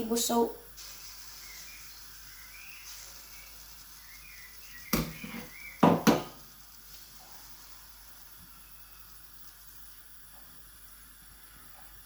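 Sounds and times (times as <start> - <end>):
utensils knocking against a pot: 4.9 - 6.4.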